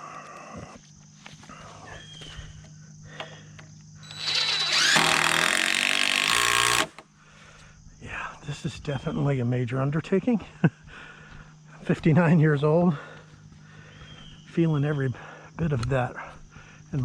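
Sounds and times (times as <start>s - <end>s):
power tool motor whining: 4.0s - 7.0s.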